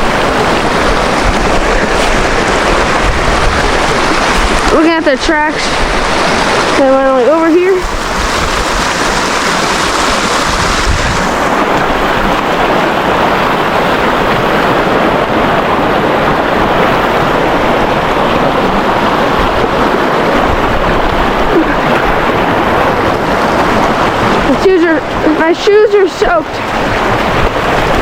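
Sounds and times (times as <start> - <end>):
creek water rushing: 0.0 - 28.0.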